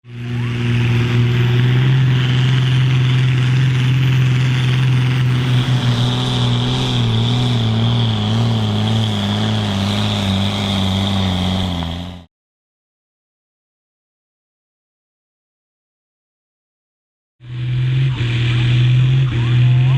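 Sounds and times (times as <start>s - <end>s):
tractor diesel engine revving loudly: 0.0s - 12.3s, 17.4s - 19.9s.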